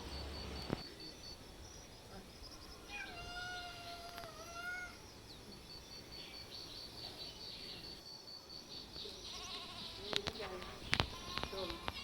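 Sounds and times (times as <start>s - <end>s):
cat meowing: 2.9s - 5.0s.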